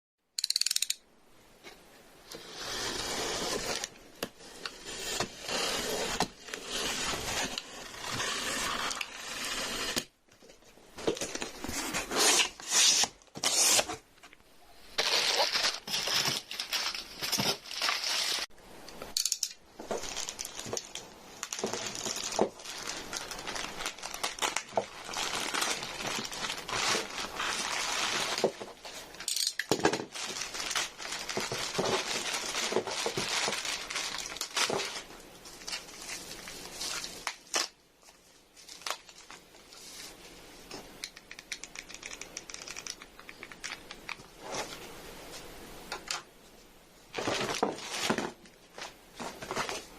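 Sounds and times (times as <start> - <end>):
cardboard and plastic packaging handled: 3.3 - 18.5, 19.8 - 40.9, 47.1 - 49.9.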